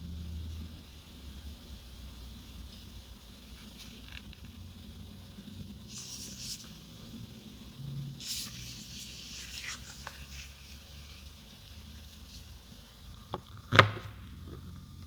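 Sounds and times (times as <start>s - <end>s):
smartphone packaging rubbing and sliding: 5.9s - 6.9s, 8.2s - 11.4s.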